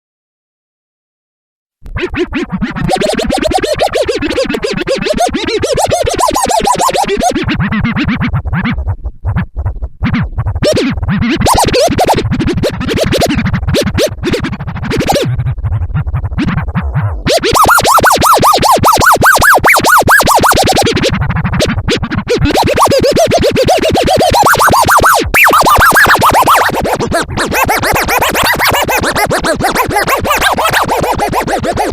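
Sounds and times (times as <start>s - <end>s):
turntable scratching: 1.8s - 31.9s.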